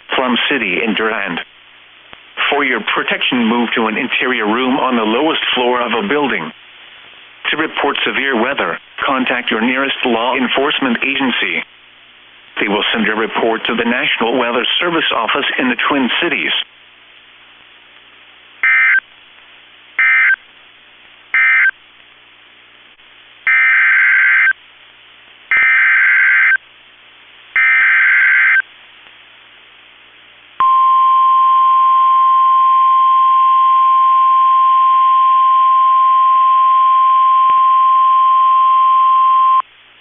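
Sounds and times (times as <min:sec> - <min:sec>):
steady warning alarm tone: 0:18.6 - 0:19.0, 0:20.0 - 0:20.4, 0:21.4 - 0:21.7, 0:23.5 - 0:24.6, 0:25.5 - 0:26.6, 0:27.6 - 0:28.6.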